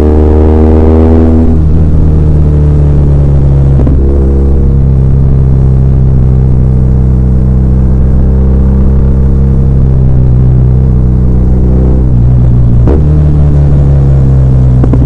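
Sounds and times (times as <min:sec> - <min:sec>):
motorcycle engine running: 0:00.0 - 0:15.0
wind noise: 0:14.2 - 0:15.0.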